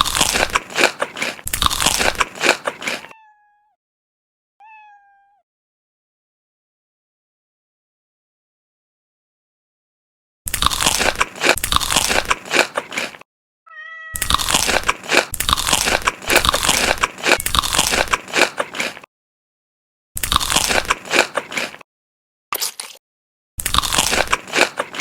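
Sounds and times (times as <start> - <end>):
crunching food: 0.0 - 3.1, 10.5 - 13.2, 14.2 - 19.1, 20.2 - 21.8, 22.5 - 23.0, 23.6 - 25.0.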